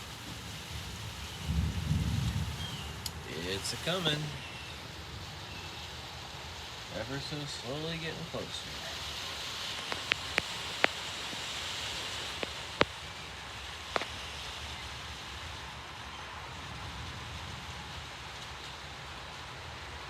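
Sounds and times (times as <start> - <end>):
light rain hiss: 0.0 - 20.0
raindrops tapping close by: 0.0 - 20.0.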